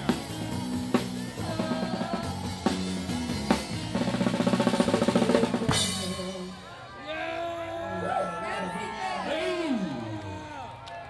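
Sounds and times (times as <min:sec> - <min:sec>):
fast drum roll: 0:00.0 - 0:06.5
loud music with drums and bass: 0:00.0 - 0:06.6.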